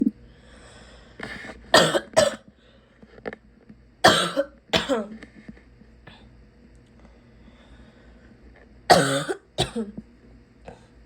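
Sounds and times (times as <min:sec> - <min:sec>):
person breathing in: 0:00.3 - 0:01.6, 0:07.0 - 0:08.3
harsh barking cough: 0:01.8 - 0:02.4, 0:04.0 - 0:05.0, 0:08.9 - 0:09.9.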